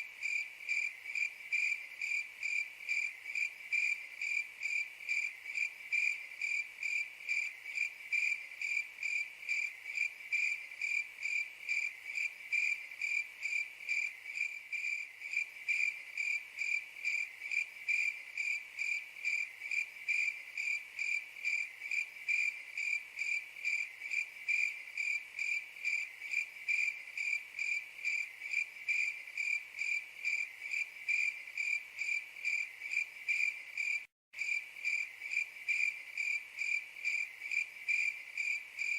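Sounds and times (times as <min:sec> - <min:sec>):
cricket chirping: 0:00.0 - 0:38.9.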